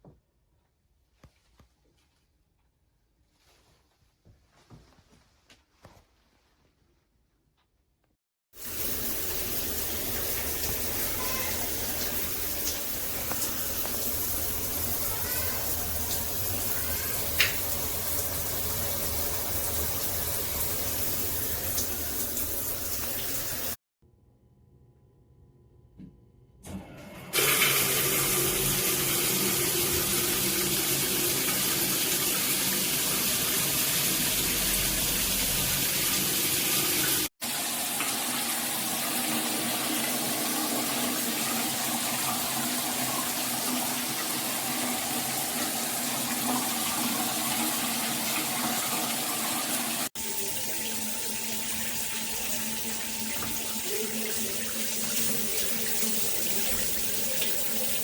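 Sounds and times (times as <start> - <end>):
water spraying from shower head: 8.6 - 23.8, 27.4 - 58.0.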